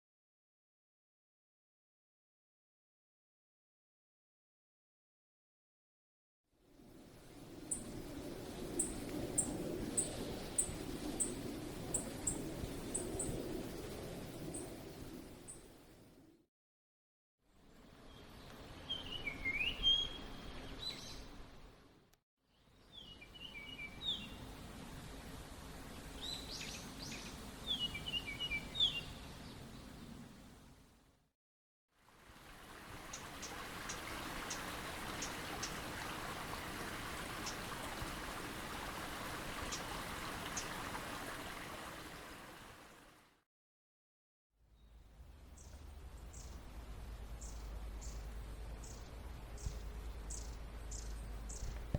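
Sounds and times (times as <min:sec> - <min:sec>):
outdoor background hiss: 0:06.6 - 0:16.4, 0:17.5 - 0:31.2, 0:32.0 - 0:43.4, 0:44.7 - 0:51.9
songbird chirps and calls: 0:18.1 - 0:21.4, 0:22.5 - 0:24.5, 0:26.1 - 0:29.9, 0:44.8 - 0:46.7, 0:47.4 - 0:51.9
running stream water: 0:32.0 - 0:43.4.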